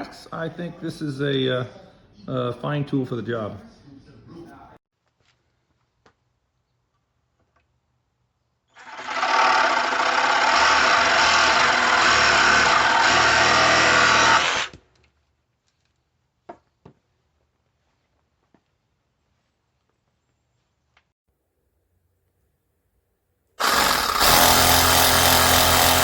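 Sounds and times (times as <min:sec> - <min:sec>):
reciprocating saw buzzing: 0:08.8 - 0:14.7, 0:23.6 - 0:26.0.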